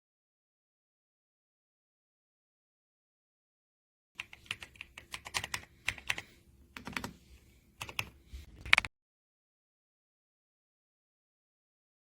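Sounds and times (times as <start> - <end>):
mechanical keyboard typing: 4.2 - 7.2, 7.8 - 8.9.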